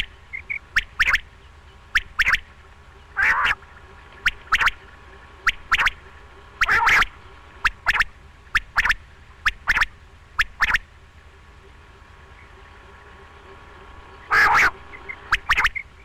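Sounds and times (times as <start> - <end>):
quail two-note calls: 0.0 - 2.5, 3.1 - 3.6, 4.2 - 4.8, 5.4 - 10.8, 14.2 - 15.9.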